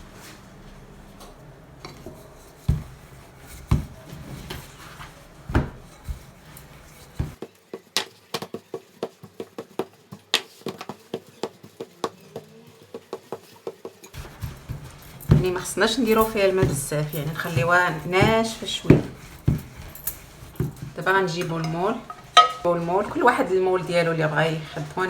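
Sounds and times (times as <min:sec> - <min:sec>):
kitchen utensils clattering: 0:00.0 - 0:07.4, 0:14.2 - 0:25.0.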